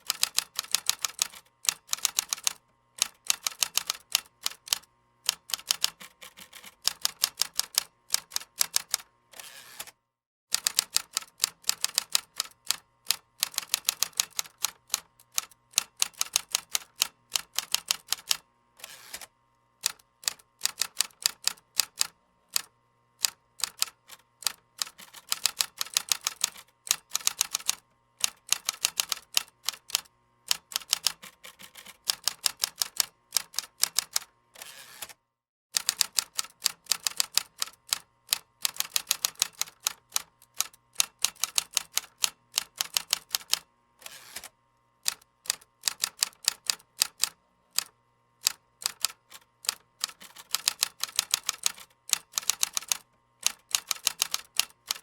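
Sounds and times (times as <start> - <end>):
keyboard typing clicks: 45.1 - 55.0.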